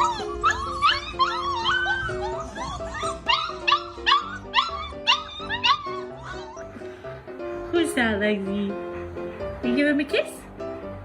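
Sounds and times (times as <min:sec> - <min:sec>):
dog whining and yipping: 0:00.0 - 0:06.9
background music with held notes: 0:00.0 - 0:11.0.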